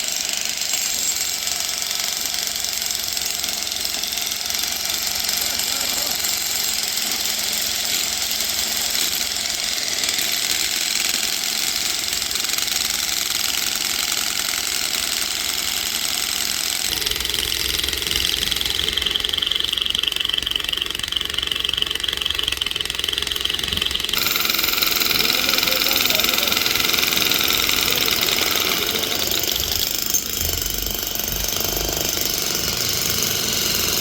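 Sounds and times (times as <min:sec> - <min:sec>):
engine running: 0:16.9 - 0:34.0.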